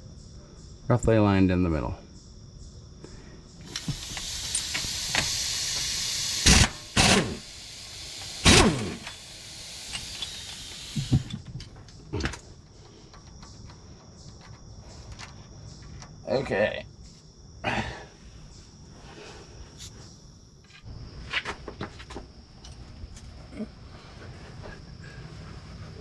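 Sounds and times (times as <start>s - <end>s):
loud air bursts: 3.6s - 11.3s
pneumatic tool air hiss: 3.6s - 11.4s.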